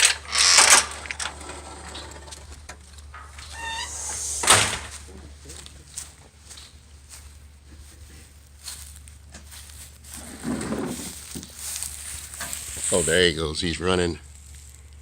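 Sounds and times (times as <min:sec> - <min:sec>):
door squeak: 0:00.0 - 0:02.4, 0:03.1 - 0:05.1
sliding door scraping: 0:00.0 - 0:05.1, 0:10.1 - 0:11.3.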